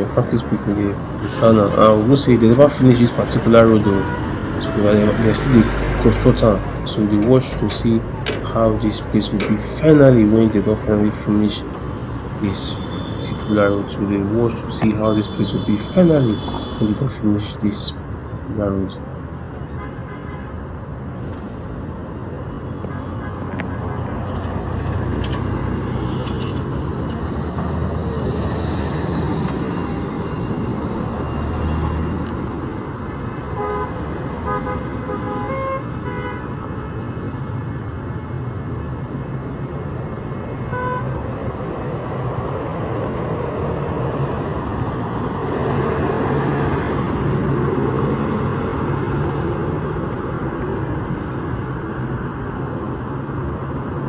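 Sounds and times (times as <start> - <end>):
vehicles passing: 0.0 - 54.0.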